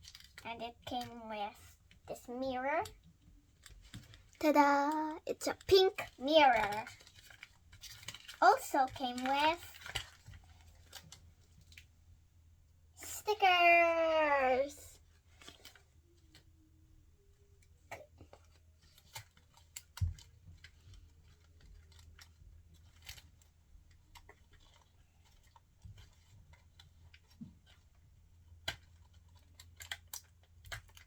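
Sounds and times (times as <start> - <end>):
plastic packaging clicks and taps: 6.6 - 11.9, 17.9 - 31.0.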